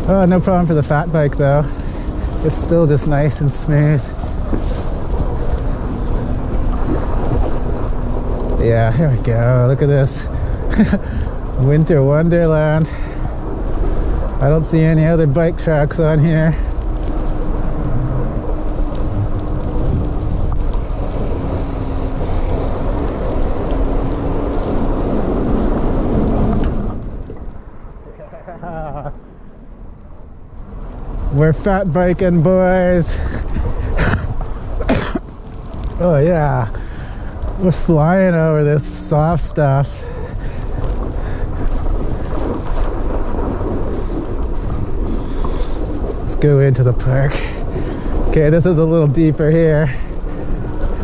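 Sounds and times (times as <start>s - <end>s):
tyres crunching through snow: 0.0s - 51.0s
wind buffeting microphone: 0.0s - 51.0s.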